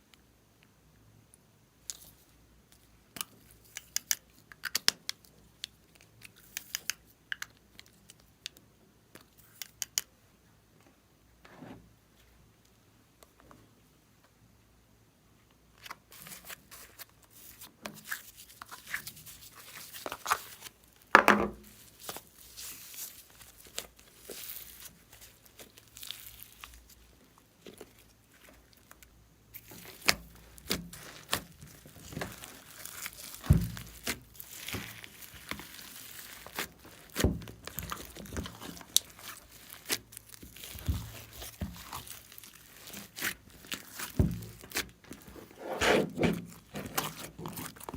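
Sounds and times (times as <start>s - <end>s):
slime squishing by hand: 15.8s - 47.9s.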